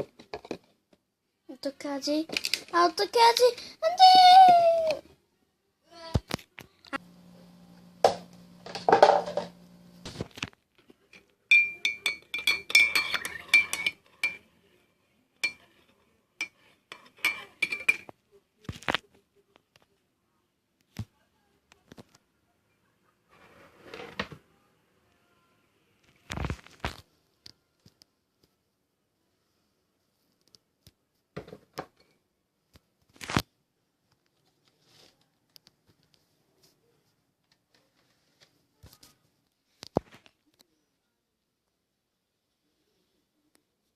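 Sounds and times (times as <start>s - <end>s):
knocks and handling noise: 0.0s - 1.0s, 7.8s - 14.4s
faint low hum: 6.6s - 12.0s
spoon clinking against cup: 11.5s - 14.4s, 15.4s - 15.7s, 16.4s - 18.1s
faint clicks and taps: 30.2s - 36.8s.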